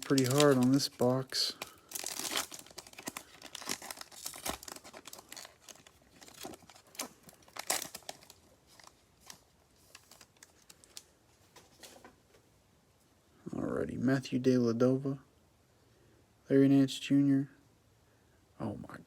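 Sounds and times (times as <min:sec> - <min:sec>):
card pack wrapper crinkling: 0:00.0 - 0:11.1.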